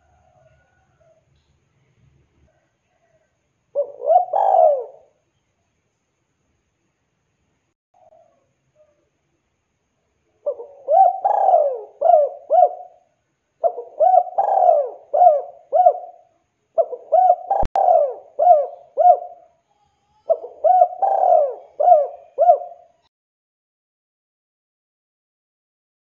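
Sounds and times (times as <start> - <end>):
dove cooing: 3.8 - 5.2, 8.0 - 9.0, 10.4 - 23.0.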